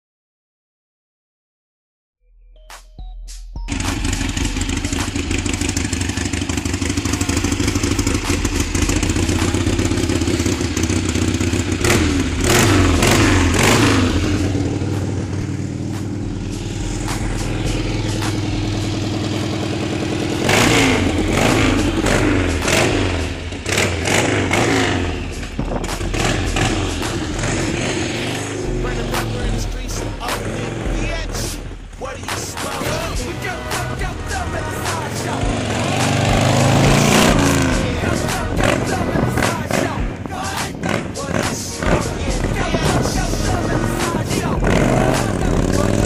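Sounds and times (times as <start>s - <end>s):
motorcycle engines running: 3.7s - 46.0s
wind rushing: 24.7s - 28.8s, 35.4s - 45.4s.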